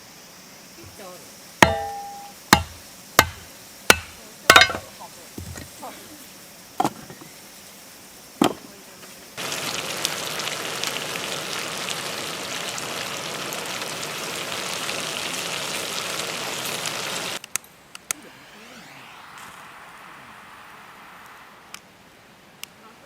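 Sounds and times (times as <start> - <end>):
food sizzling in hot oil: 0.0 - 17.4.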